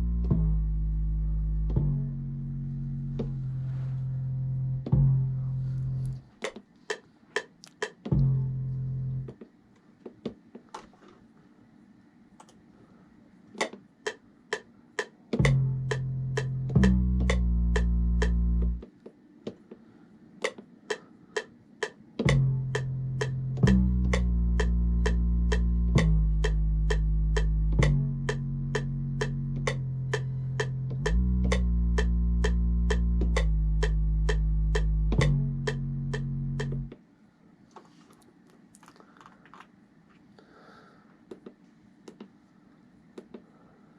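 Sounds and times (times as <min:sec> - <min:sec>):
deep bass notes: 0:00.0 - 0:06.4, 0:08.0 - 0:09.4, 0:15.4 - 0:18.8, 0:22.2 - 0:37.0
hi-hat ticks: 0:20.4 - 0:36.9
plucked melody: 0:22.2 - 0:36.9.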